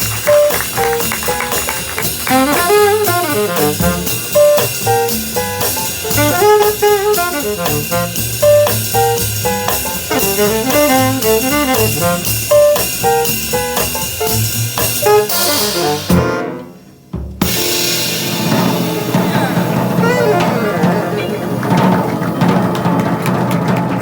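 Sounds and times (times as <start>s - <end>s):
drum kit: 0.0s - 24.0s
jazz band playing: 0.0s - 24.0s
horn line: 0.1s - 9.0s, 10.0s - 12.8s, 15.0s - 16.8s, 18.5s - 23.5s.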